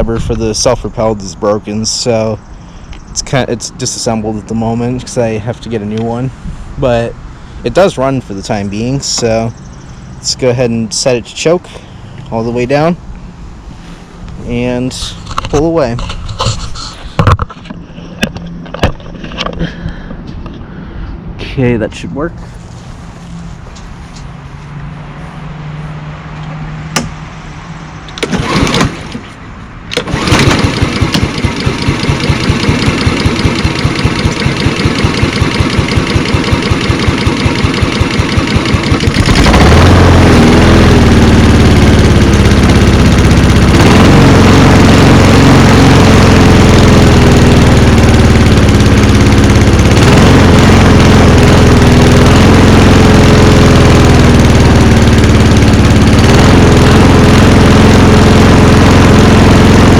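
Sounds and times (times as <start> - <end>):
mower engine surging: 0.0 - 13.1, 28.1 - 59.9
starter cord pulls: 28.1 - 29.3, 29.9 - 52.6.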